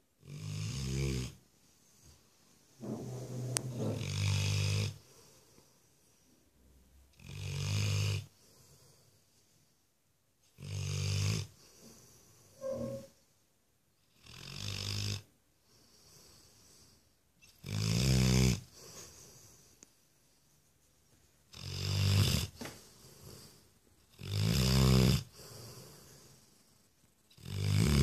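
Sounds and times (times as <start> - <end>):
dog snoring: 0.2 - 1.4, 2.8 - 5.3, 7.1 - 8.8, 10.5 - 13.1, 14.1 - 19.6, 21.5 - 26.5, 27.3 - 28.0
quiet breathing: 1.3 - 7.1, 8.2 - 10.2, 11.5 - 13.5, 15.5 - 17.4, 18.6 - 21.5, 22.5 - 24.1, 25.2 - 27.3
brief squeak: 12.6 - 13.2.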